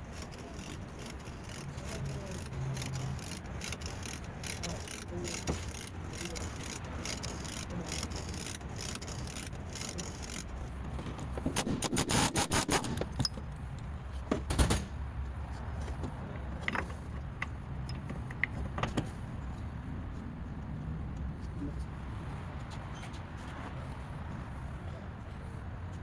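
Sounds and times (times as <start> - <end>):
rapid clicks: 0.0 - 10.7, 11.4 - 13.2
suspension mount scraping and creaking: 0.0 - 13.9.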